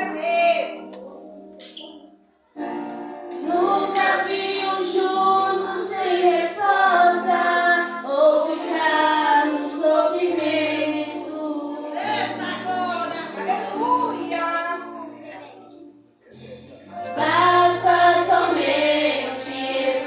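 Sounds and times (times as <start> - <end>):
backing music: 0.0 - 20.0
group singing a worship song: 3.4 - 15.1, 16.3 - 20.0.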